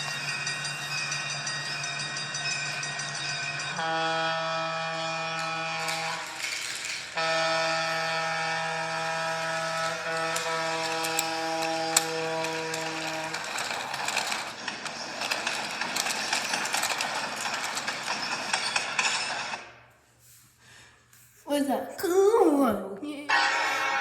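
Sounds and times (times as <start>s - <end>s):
train clicking and rattling: 0.0s - 19.7s
train horn: 3.7s - 13.4s.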